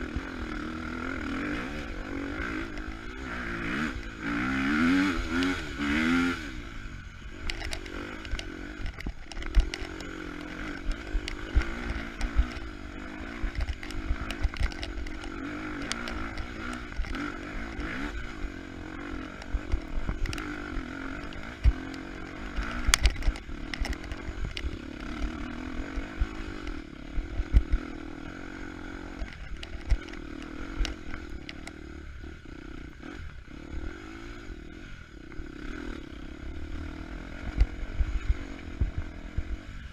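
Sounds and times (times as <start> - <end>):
dirt bike engine revving: 0.0 - 39.9
sharp knocks and clatter: 7.4 - 18.2.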